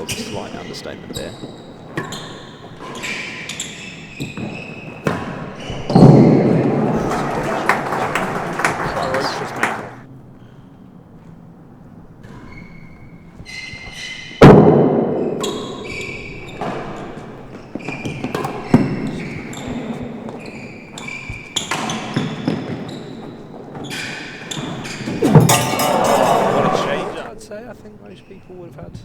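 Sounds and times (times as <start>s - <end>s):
rackets striking ball: 0.0s - 10.0s, 14.4s - 27.4s
shoes squeaking on floor: 0.0s - 14.6s, 15.2s - 29.0s
ball thudding off walls: 5.1s - 10.0s, 24.7s - 27.4s.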